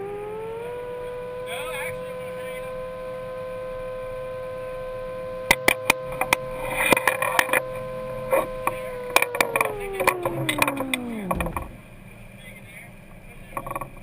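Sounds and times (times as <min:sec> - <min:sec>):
small motor whining: 0:00.0 - 0:12.4
sharp clicks and knocks: 0:05.5 - 0:11.8, 0:13.5 - 0:14.0.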